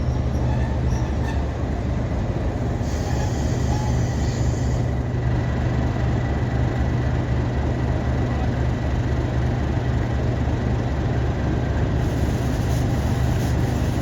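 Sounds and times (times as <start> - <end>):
diesel locomotive engine drone: 0.0 - 14.0
hiss: 2.8 - 4.9, 12.0 - 14.0.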